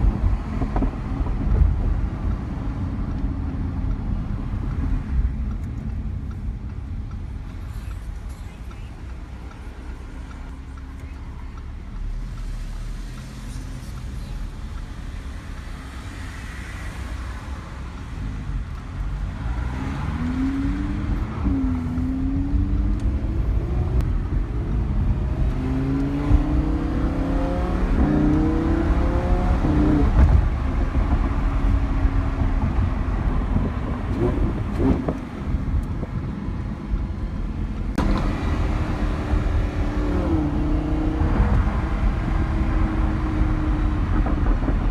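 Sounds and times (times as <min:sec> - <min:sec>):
car engine revving through gear changes: 0:08.7 - 0:36.3, 0:37.8 - 0:44.9.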